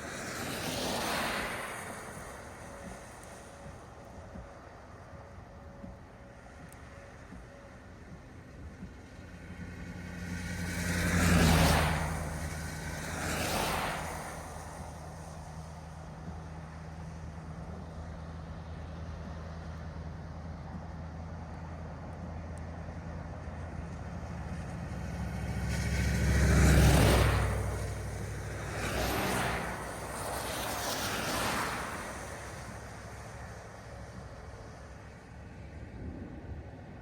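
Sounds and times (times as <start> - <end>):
car engine and road hum: 0.0 - 37.0
vehicle passing: 9.0 - 17.6, 23.3 - 37.0.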